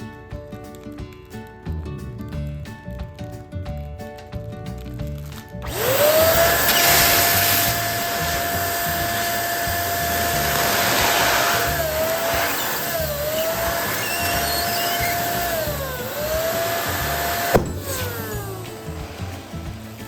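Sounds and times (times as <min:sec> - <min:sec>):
background music: 0:00.0 - 0:20.0
electric balloon pump whining: 0:05.6 - 0:20.0.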